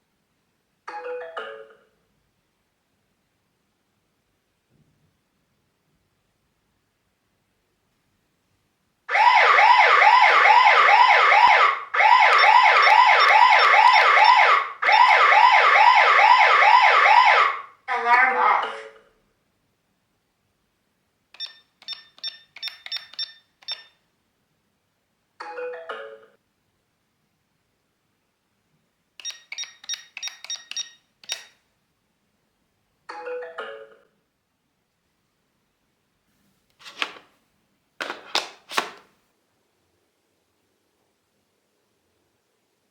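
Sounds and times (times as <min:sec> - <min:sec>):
alarm siren wailing: 0:09.1 - 0:17.6
sharp alarm beep: 0:12.3 - 0:14.4, 0:29.2 - 0:31.5
short high alarm beeps: 0:12.3 - 0:15.0, 0:29.2 - 0:31.5.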